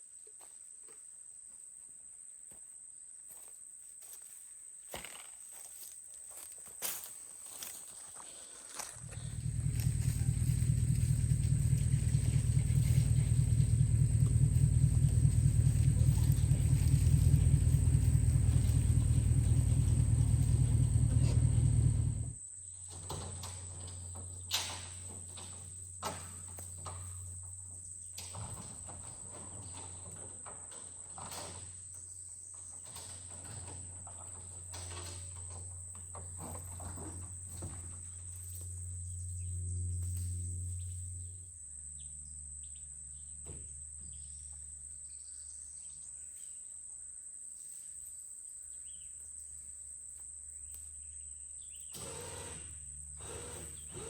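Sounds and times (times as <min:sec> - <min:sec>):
insects chirring: 0:08.7 - 0:23.0
low engine hum: 0:09.0 - 0:22.4, 0:35.2 - 0:44.9.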